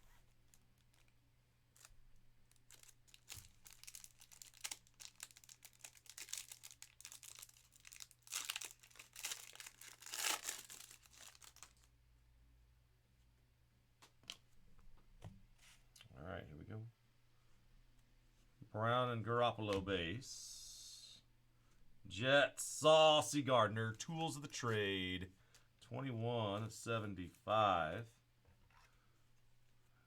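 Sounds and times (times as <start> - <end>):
plastic wrapper tearing and crinkling: 0.4 - 11.9.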